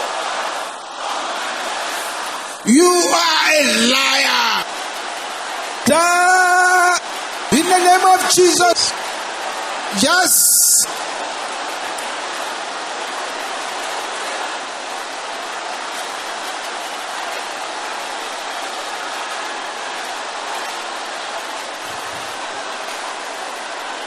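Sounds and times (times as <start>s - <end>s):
crowd praying aloud: 0.0s - 24.0s.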